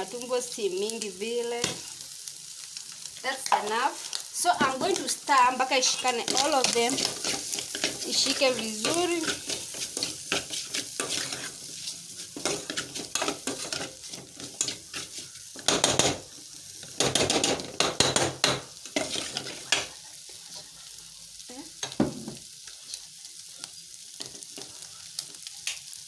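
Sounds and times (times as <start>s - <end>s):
food sizzling in oil: 0.0s - 26.0s
utensil scraping a pan: 5.8s - 16.2s, 18.9s - 19.9s.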